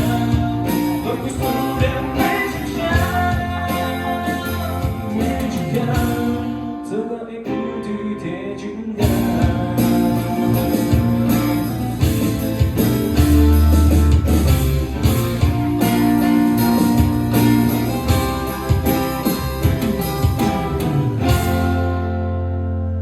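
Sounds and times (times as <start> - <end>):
band playing instrumental rock: 0.0 - 6.9, 9.0 - 23.0
drum and cymbal hits: 9.0 - 21.9.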